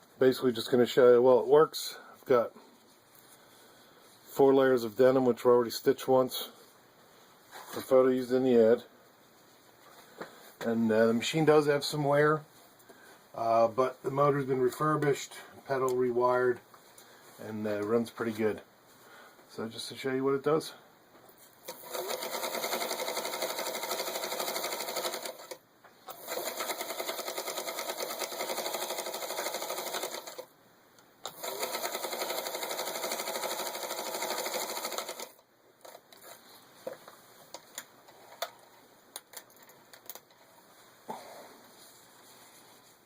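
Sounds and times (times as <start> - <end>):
sewing machine stitching: 21.7 - 30.5, 31.2 - 35.4.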